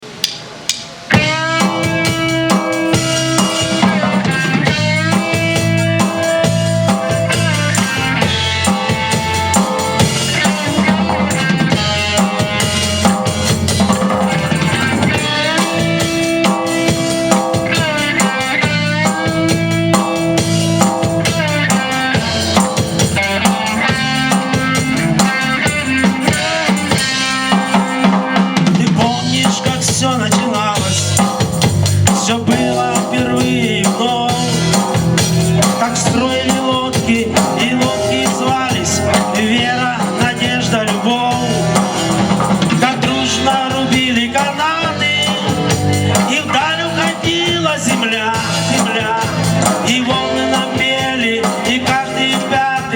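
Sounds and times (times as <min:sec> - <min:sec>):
bass: 0:00.0 - 0:52.9
drum kit beat: 0:00.0 - 0:52.9
melodic lead lines: 0:01.2 - 0:28.4.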